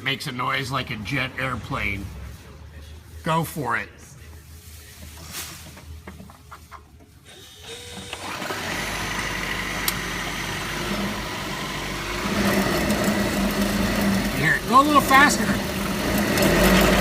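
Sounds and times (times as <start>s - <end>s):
car pulling away: 8.2s - 17.0s.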